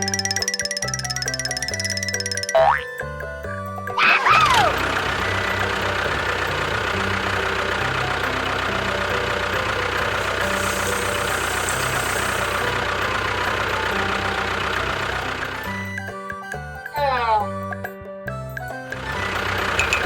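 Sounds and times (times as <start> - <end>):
small motor humming: 0.0 - 2.8, 4.2 - 17.7, 18.8 - 20.0
rising hiss: 10.2 - 13.5.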